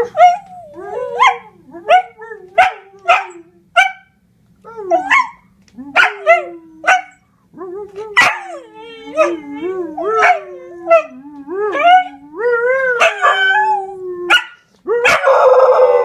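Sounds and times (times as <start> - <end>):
dog howling: 4.7 - 16.0.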